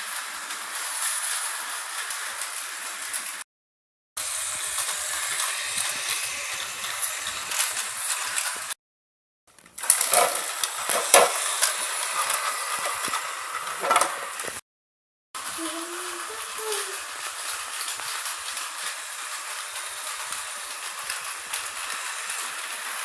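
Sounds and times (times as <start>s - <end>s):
toy train motor whirring: 0.0s - 3.4s, 4.2s - 8.8s, 9.6s - 14.6s, 15.4s - 23.0s
wheels clicking: 15.4s - 23.0s.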